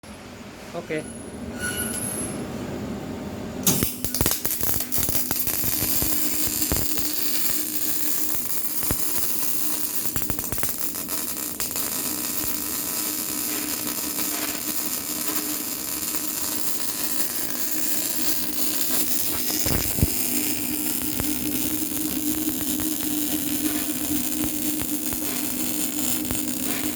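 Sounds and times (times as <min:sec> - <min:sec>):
welding arc crackling: 0:03.6 - 0:26.9
steady hum: 0:18.4 - 0:26.9.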